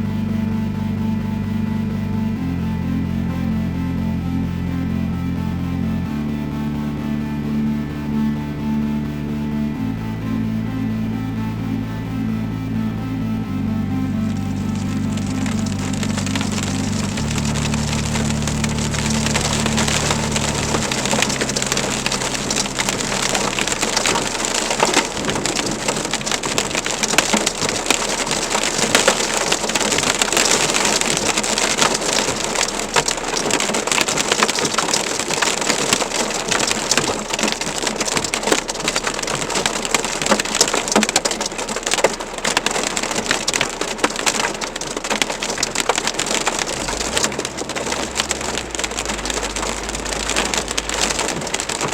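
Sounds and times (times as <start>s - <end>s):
low rumble: 0.0s - 51.9s
heavy rain and hail pelting: 14.1s - 51.9s.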